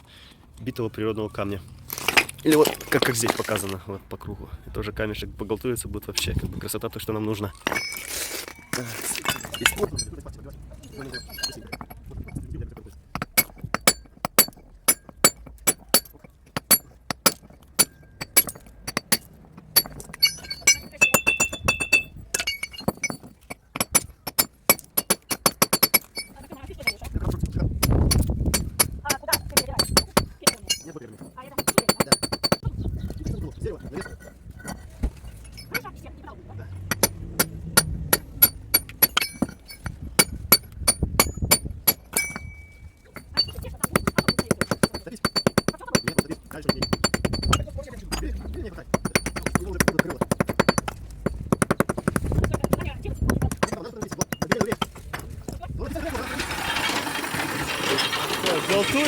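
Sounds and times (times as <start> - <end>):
hammer chipping stone: 7.6 - 10.2, 11.0 - 34.9, 36.8 - 56.2.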